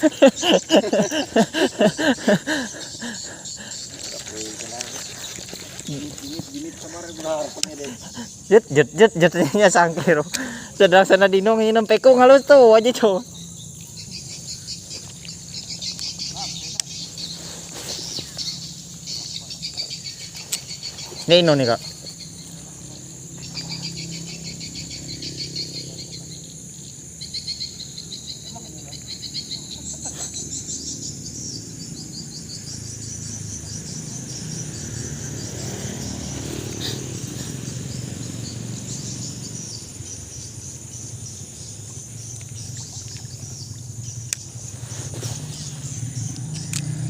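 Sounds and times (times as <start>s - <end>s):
insects trilling: 0.0s - 47.0s.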